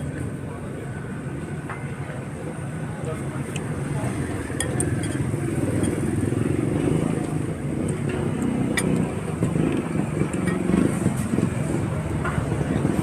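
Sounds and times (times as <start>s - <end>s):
street traffic: 0.0s - 13.0s
motorcycle engine running: 4.0s - 13.0s.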